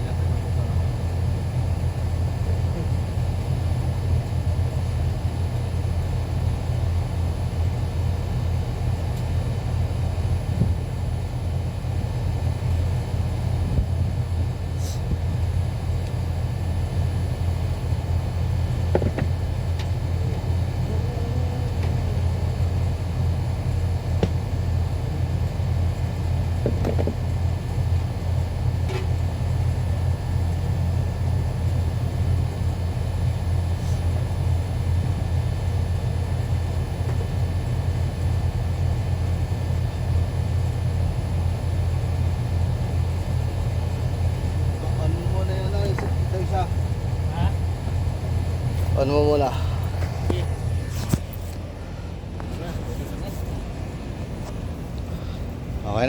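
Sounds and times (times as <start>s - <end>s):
steady low rumble: 0.0s - 56.0s
faint voices: 20.1s - 22.5s, 48.9s - 54.5s.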